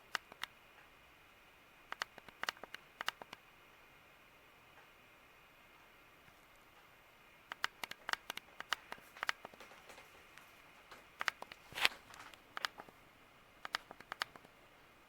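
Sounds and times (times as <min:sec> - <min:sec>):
ceiling fan running: 0:00.0 - 0:15.0
sharp clicks and ticks: 0:00.1 - 0:00.5, 0:01.9 - 0:03.4, 0:07.5 - 0:12.9, 0:13.6 - 0:14.6.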